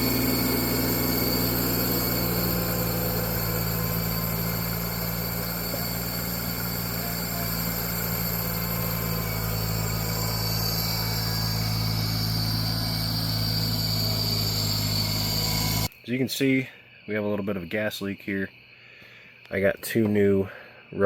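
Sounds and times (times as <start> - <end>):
engine idling: 0.0 - 15.9.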